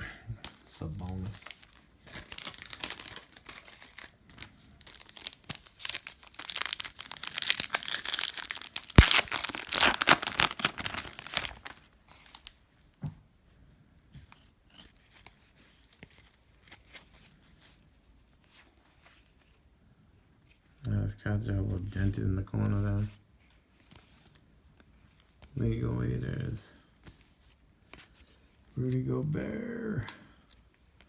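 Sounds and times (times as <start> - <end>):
plastic wrapper tearing and crinkling: 0.8 - 12.6.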